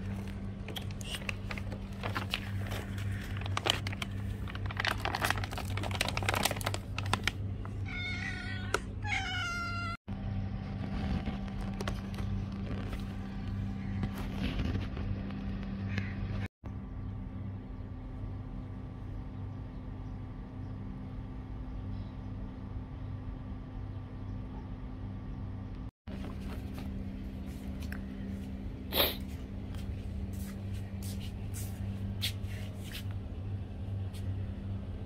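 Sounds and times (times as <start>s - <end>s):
low hum: 0.0s - 7.9s, 10.1s - 35.0s
clicks and rustles: 0.1s - 7.4s
cat meowing: 7.8s - 10.0s.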